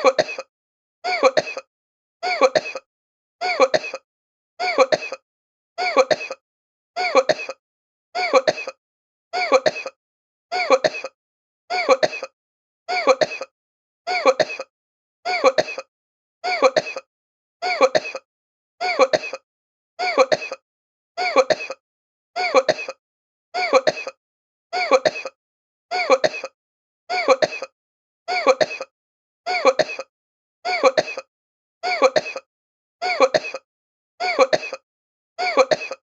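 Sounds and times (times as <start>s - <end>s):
person coughing: 0.0s - 0.5s, 1.1s - 1.7s, 2.3s - 4.0s, 4.6s - 5.2s, 5.8s - 6.4s, 7.0s - 7.6s, 8.2s - 8.8s, 9.4s - 10.0s, 10.6s - 11.2s, 11.8s - 12.3s, 12.9s - 13.5s, 14.1s - 14.7s, 15.3s - 15.9s, 16.5s - 19.4s, 20.0s - 20.6s, 21.2s - 21.8s, 22.4s - 23.0s, 23.6s - 24.2s, 24.8s - 25.4s, 26.0s - 27.7s, 28.3s - 28.9s, 29.5s - 30.1s, 30.7s - 31.3s, 31.9s - 33.6s, 34.2s - 34.8s, 35.4s - 36.0s.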